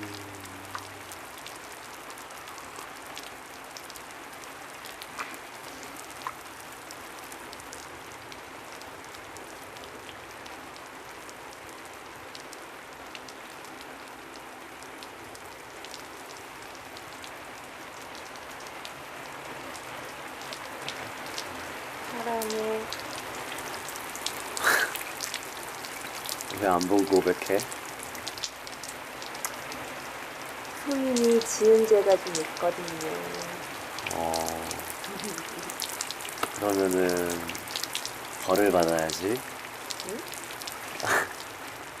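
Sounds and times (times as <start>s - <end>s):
steady rain falling: 0.0s - 42.0s
drip ticks: 6.2s - 6.4s, 32.2s - 41.4s.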